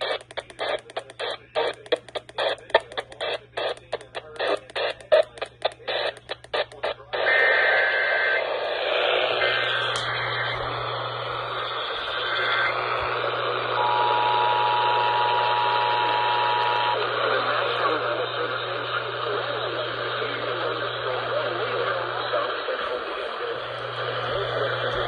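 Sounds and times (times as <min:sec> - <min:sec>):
radio hiss: 0:00.0 - 0:25.0.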